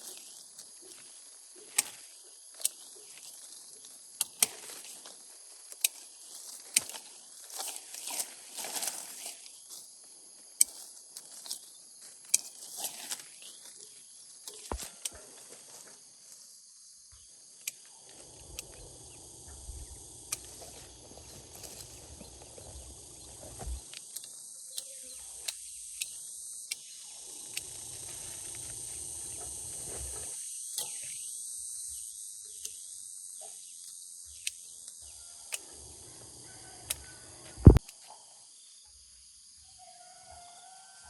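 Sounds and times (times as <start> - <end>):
steady high hiss: 17.9 - 32.9.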